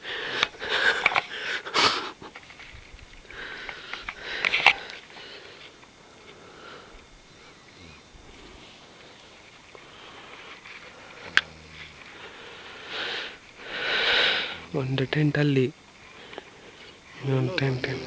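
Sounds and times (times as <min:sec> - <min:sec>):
faint breathing: 0:00.0 - 0:02.2, 0:02.8 - 0:18.0
man snoring: 0:06.5 - 0:08.9, 0:11.0 - 0:15.4, 0:17.2 - 0:18.0.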